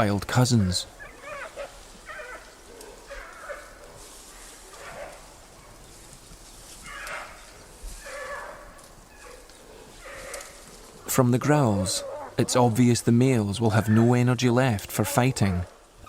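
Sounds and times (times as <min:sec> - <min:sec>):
pandas growling and bleating: 0:11.6 - 0:12.9.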